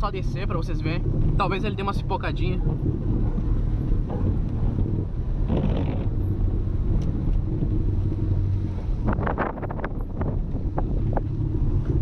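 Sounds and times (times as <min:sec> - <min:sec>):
car engine droning at low revs: 0:00.0 - 0:12.0.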